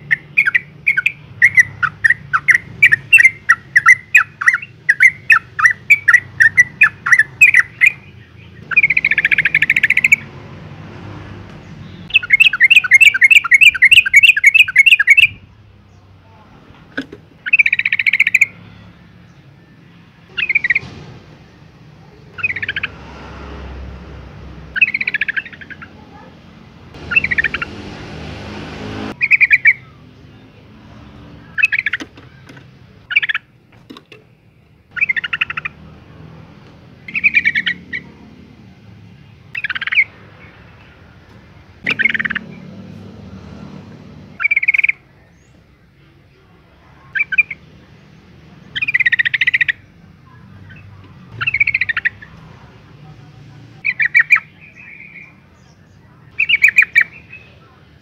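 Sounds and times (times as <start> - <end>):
bird chattering: 0.0 - 10.3, 11.8 - 15.4, 17.4 - 18.6, 20.3 - 20.9, 22.0 - 23.0, 24.7 - 28.2, 29.1 - 30.0, 31.5 - 33.6, 34.9 - 35.9, 37.0 - 38.3, 39.6 - 41.0, 41.8 - 42.7, 44.3 - 45.5, 47.0 - 52.5, 53.8 - 55.7, 56.3 - 57.8.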